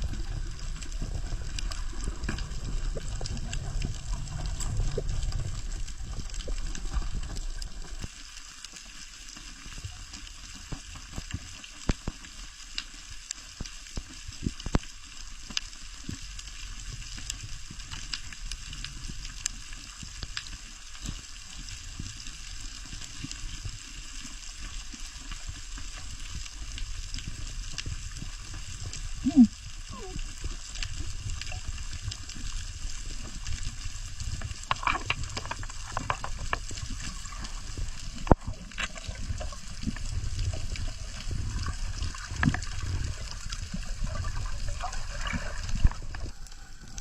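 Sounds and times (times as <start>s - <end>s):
underwater crackling hiss: 0.0s - 47.0s.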